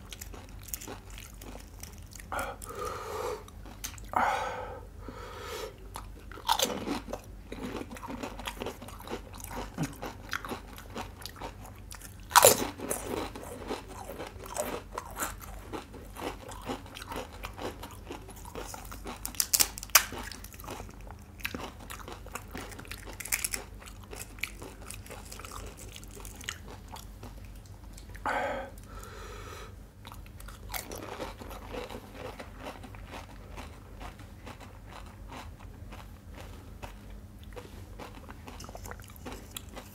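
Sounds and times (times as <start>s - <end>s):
chewing: 5.9s - 28.2s, 30.0s - 39.9s
crisp shell crunching: 21.5s - 26.8s.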